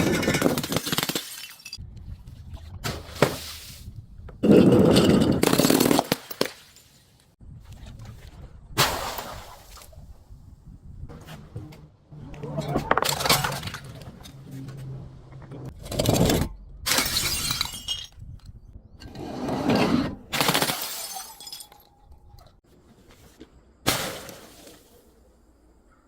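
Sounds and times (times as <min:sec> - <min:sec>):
glass bottles shattering: 0:00.0 - 0:01.8, 0:16.9 - 0:18.3, 0:20.4 - 0:22.0.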